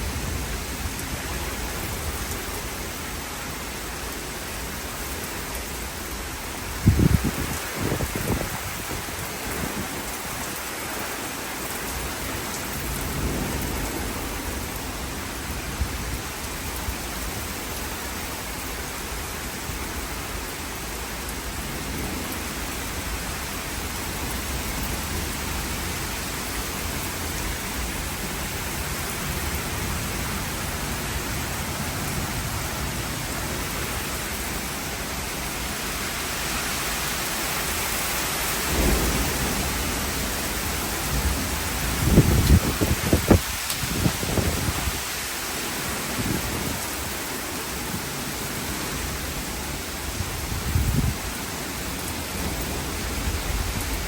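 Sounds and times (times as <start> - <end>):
steady rain: 0.0 - 54.0
thunder rumbling: 38.5 - 45.0.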